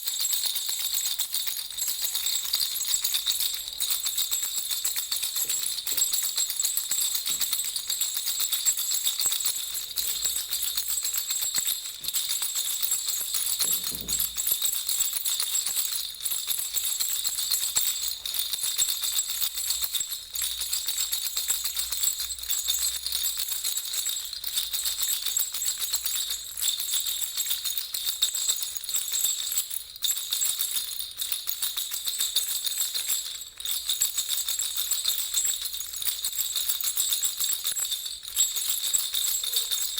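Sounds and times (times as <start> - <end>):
baby rattle jingling: 0.0 - 39.9.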